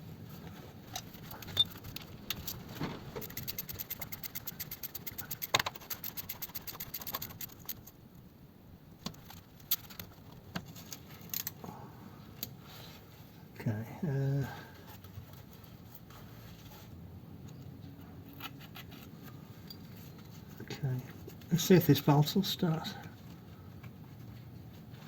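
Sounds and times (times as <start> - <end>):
rapid even clicking: 0.9 - 8.0, 9.0 - 10.7.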